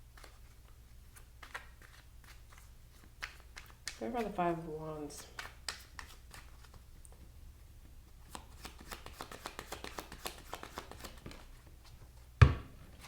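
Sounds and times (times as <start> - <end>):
cards being shuffled: 0.1 - 4.4, 5.2 - 7.3, 8.2 - 12.2.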